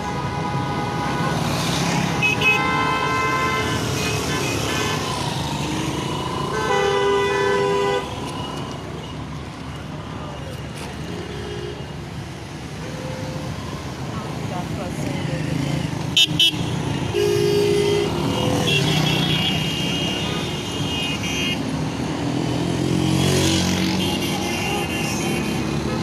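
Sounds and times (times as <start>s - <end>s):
vehicle horns honking: 0.0s - 5.5s, 6.4s - 8.6s, 16.1s - 21.9s, 23.1s - 26.0s
road traffic passing: 0.0s - 26.0s.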